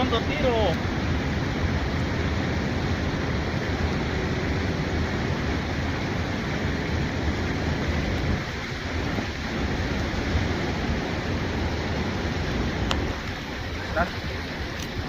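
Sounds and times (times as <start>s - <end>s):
river water rushing: 0.0s - 15.0s.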